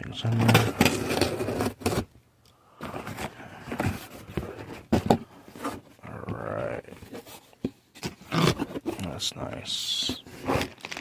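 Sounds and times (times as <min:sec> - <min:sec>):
cardboard tearing and rustling: 0:08.0 - 0:09.2, 0:10.2 - 0:11.0.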